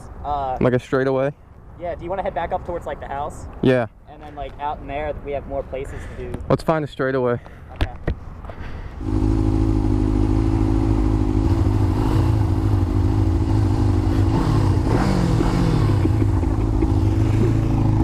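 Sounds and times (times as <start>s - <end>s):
motorcycle engine idling: 9.0s - 14.9s.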